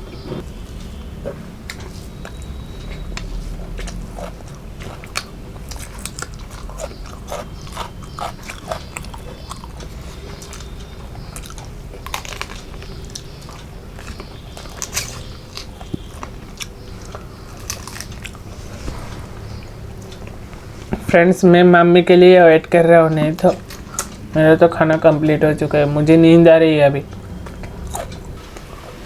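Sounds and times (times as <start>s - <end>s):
person chewing: 0.4s - 21.1s, 23.4s - 24.3s, 27.1s - 28.8s.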